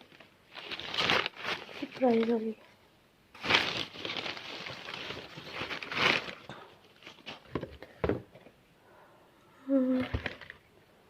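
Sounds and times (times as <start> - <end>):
packaging rustling and crinkling: 0.0 - 2.6, 3.4 - 7.7.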